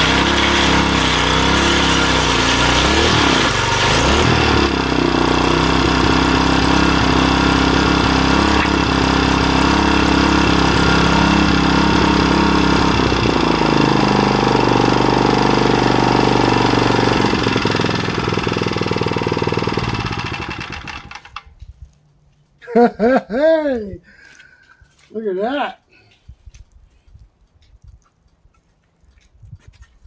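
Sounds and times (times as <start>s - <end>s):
small gas engine running: 0.0s - 21.5s.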